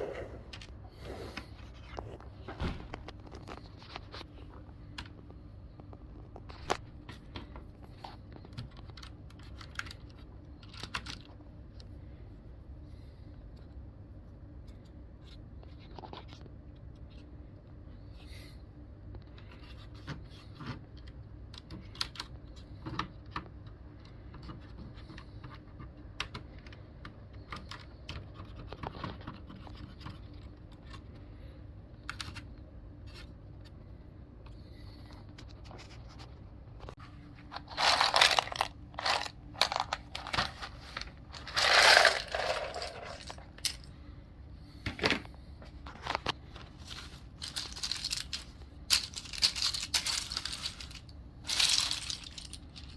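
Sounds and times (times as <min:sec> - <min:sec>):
plastic keyboard parts clicking: 0:08.3 - 0:11.4, 0:19.6 - 0:31.1, 0:47.4 - 0:52.9.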